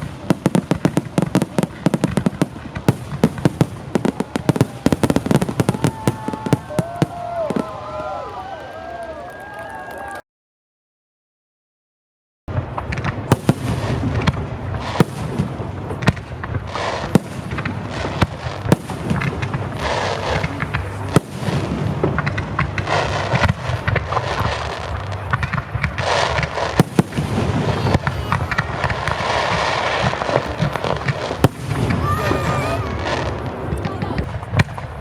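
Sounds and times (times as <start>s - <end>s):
fireworks crackle: 0.0s - 10.2s, 12.5s - 35.0s.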